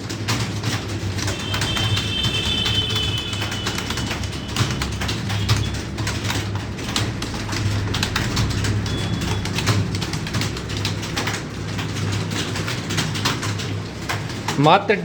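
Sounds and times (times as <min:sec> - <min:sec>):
fast keyboard typing: 0:00.0 - 0:15.0
steady low hum: 0:03.8 - 0:13.2.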